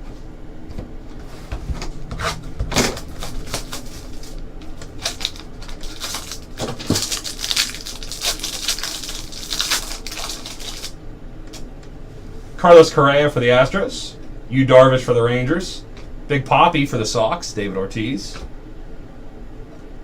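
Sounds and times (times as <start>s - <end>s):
trading cards clicking and rustling: 1.8s - 10.9s.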